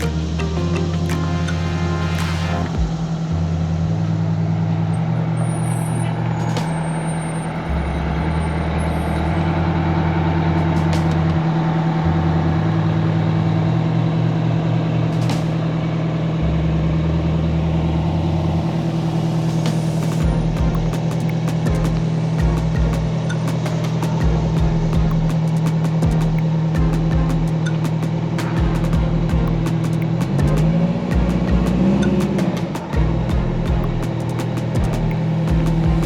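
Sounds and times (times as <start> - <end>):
large vehicle engine running: 7.5 - 36.0.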